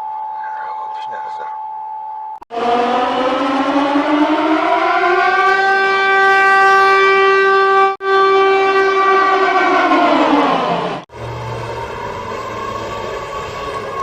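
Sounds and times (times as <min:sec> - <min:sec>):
reversed siren wail: 0:01.6 - 0:14.0.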